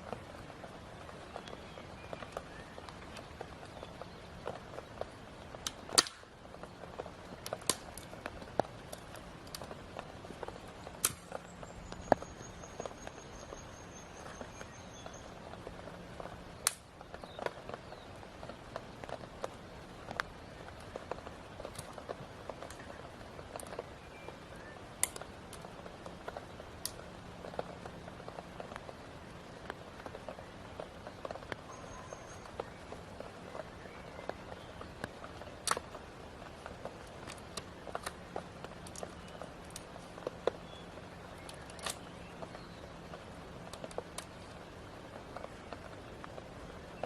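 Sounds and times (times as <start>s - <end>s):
rain hiss: 0.0s - 47.0s
camping gear clicks and knocks: 34.2s - 40.8s, 41.4s - 44.7s.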